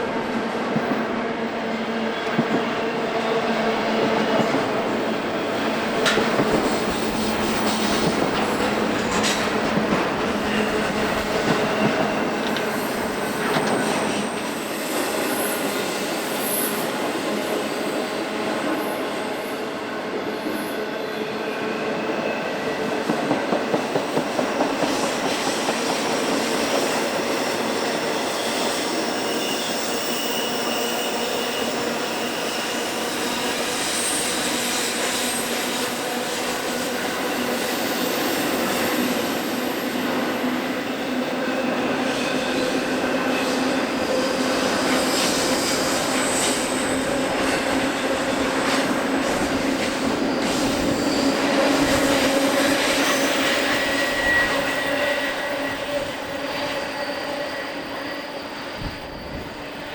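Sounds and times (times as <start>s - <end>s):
freight train rumble: 0.0s - 16.2s, 32.7s - 59.9s
wheel squeal: 27.7s - 35.8s, 37.1s - 59.9s.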